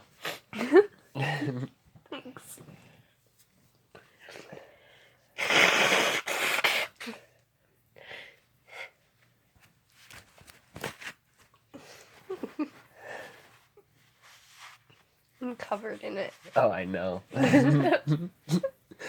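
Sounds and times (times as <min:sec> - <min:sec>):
person sneezing loudly: 0:05.4 - 0:07.2.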